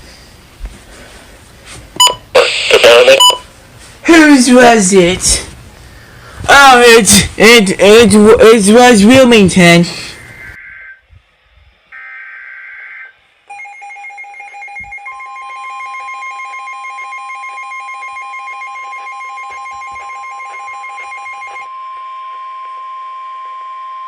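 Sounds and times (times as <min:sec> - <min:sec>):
steady warning alarm tone: 0:10.4 - 0:11.1, 0:11.9 - 0:24.0
pulsing electronic alarm beep: 0:12.0 - 0:21.8.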